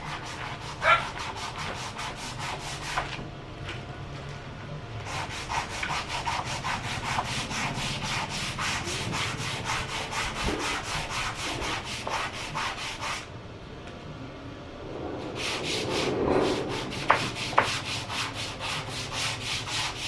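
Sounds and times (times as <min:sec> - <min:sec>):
sandpaper rubbing wood: 0:00.0 - 0:03.2, 0:05.0 - 0:13.3, 0:15.4 - 0:20.0.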